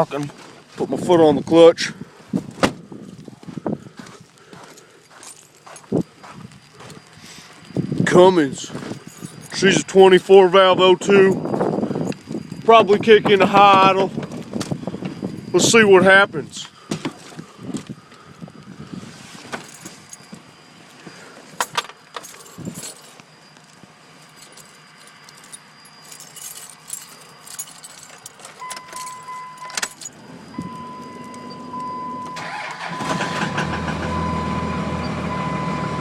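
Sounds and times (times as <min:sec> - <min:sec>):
steady high tone: 0:03.7 - 0:36.0
diesel engine cranking and running: 0:03.9 - 0:36.0
keys and clicks: 0:04.3 - 0:15.6, 0:21.5 - 0:33.5.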